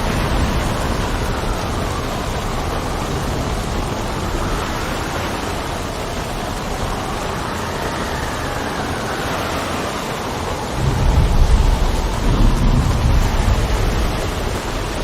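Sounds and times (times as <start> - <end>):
steady rain: 0.0 - 15.0
wind gust whistling: 0.0 - 15.0.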